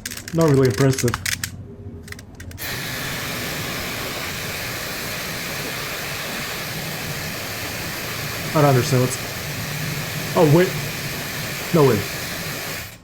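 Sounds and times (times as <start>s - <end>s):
steady hiss: 2.6s - 13.0s.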